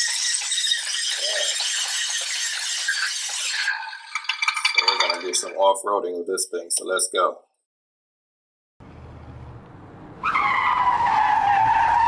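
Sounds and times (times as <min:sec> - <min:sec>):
toy buggy rattling on hard floor: 0:00.0 - 0:05.2.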